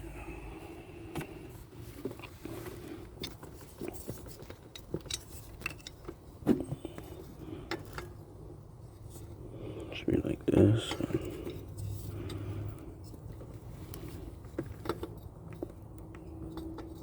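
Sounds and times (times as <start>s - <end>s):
metal clinks and scrapes: 3.1s - 6.4s, 10.8s - 17.0s.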